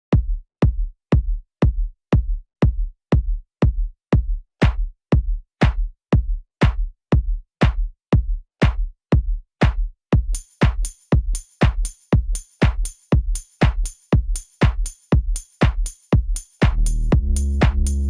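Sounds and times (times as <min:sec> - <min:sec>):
drum machine kick: 0:00.1 - 0:18.0.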